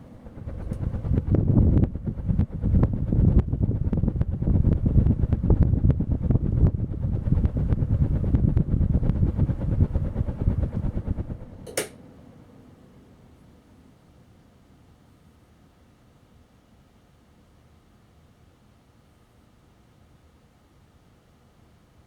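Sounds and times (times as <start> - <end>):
ceiling fan wind buffeting microphone: 0.0 - 13.9
sharp click: 11.7 - 12.0.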